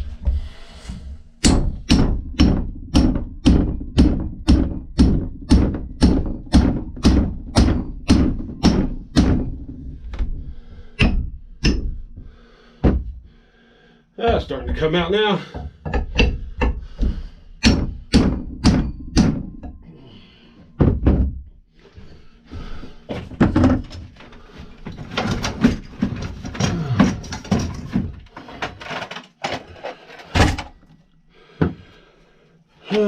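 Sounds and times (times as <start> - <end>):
hammer striking a chisel: 1.4 - 9.5, 11.0 - 12.0, 15.5 - 19.8.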